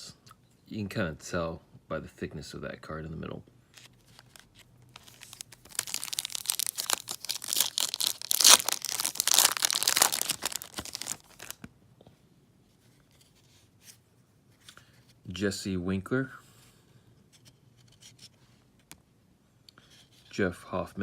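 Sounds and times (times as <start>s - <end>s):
wrapper tearing and crinkling: 4.1s - 11.6s.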